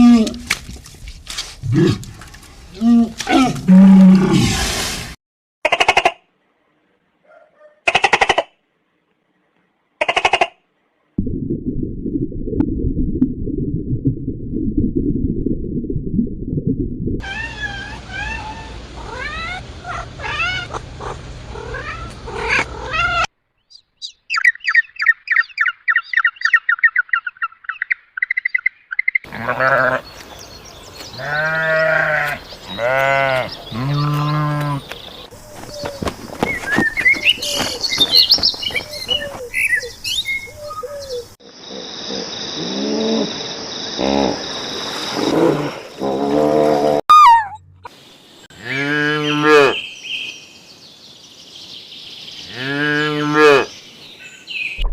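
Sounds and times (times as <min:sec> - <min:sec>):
animal chirping calls: 0:47.1 - 0:47.6.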